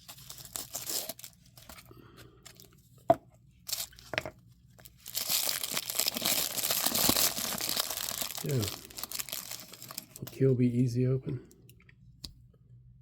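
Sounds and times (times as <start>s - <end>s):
packaging rustling: 0.0s - 1.9s, 3.7s - 4.1s, 4.8s - 10.4s
wrapping crinkling and tearing: 0.0s - 1.9s, 3.7s - 4.1s, 4.7s - 10.5s.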